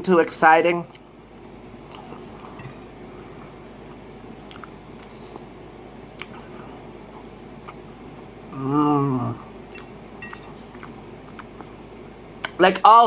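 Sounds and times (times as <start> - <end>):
person chewing food: 1.8 - 8.3, 9.6 - 12.6.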